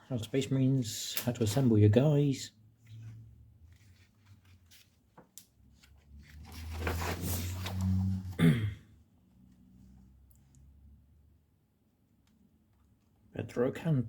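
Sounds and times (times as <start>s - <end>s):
magazine pages rustling: 2.9s - 8.4s.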